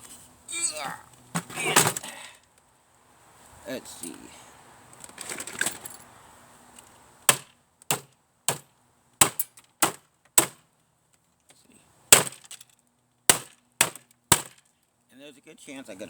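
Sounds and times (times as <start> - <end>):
sharp blows on electronic equipment: 7.3 - 8.6, 9.2 - 10.6, 12.1 - 12.4, 13.3 - 14.6.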